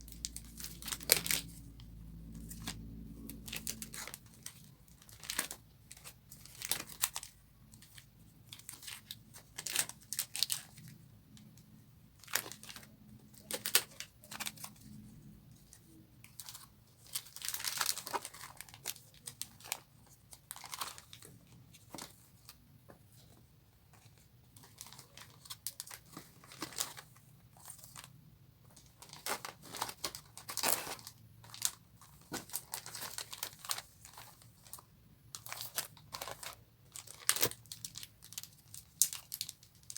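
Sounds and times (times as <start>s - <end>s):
packaging crinkling and rustling: 0.0s - 39.9s
packaging tearing: 35.4s - 39.9s.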